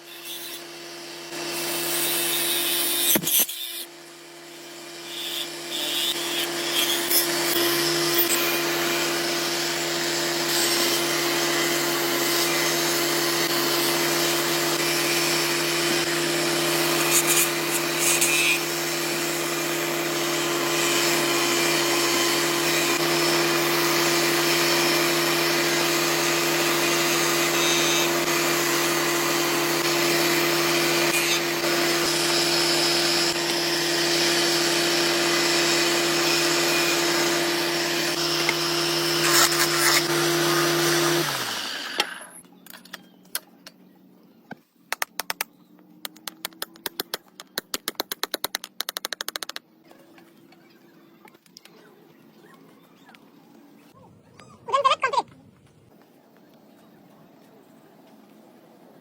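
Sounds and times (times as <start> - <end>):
power tool motor humming: 0.0 - 42.4.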